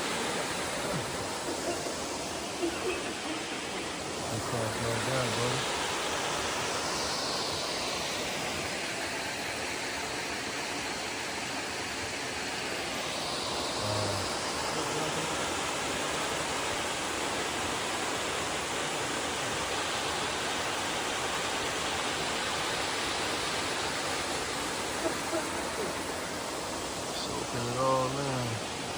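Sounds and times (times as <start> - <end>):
small waterfall pouring into pool: 0.0 - 28.9.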